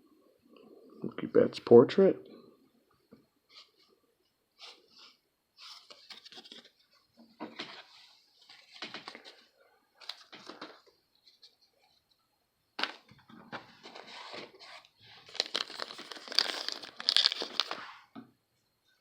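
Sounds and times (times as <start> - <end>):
trading cards rustling: 15.2 - 17.9.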